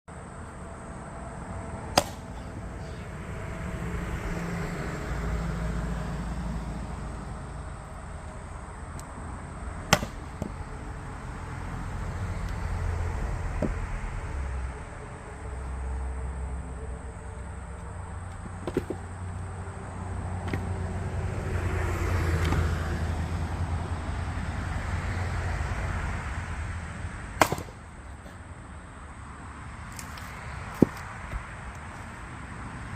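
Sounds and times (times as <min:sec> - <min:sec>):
axe striking firewood: 0:01.9 - 0:02.5, 0:09.8 - 0:10.6, 0:18.6 - 0:19.1, 0:20.4 - 0:20.8, 0:27.4 - 0:27.8, 0:30.0 - 0:31.4.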